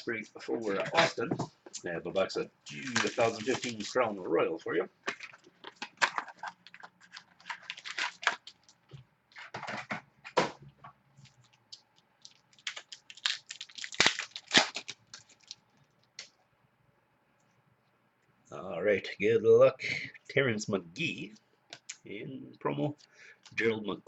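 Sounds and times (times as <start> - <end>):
plastic wrapping crackling and tearing: 2.7 - 4.0, 5.1 - 9.5, 11.2 - 16.2.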